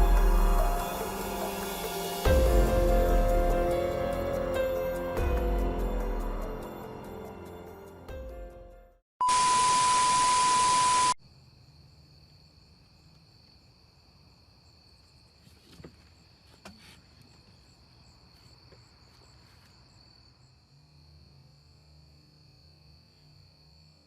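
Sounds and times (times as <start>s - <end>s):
music: 0.0s - 9.0s
loud steady beep: 9.2s - 11.2s.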